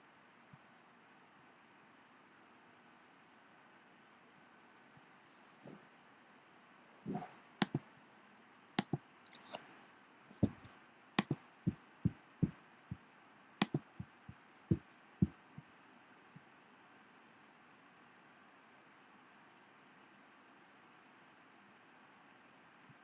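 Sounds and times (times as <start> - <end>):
laptop keyboard typing: 10.4 - 11.4, 13.6 - 14.2.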